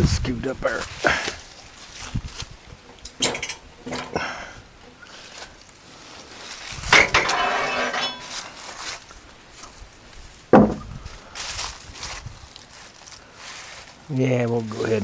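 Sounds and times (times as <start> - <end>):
metal clanking: 2.8 - 5.0, 6.8 - 9.0
ringing metal clatter: 3.0 - 4.2, 6.9 - 8.8
hard knock: 10.5 - 11.0.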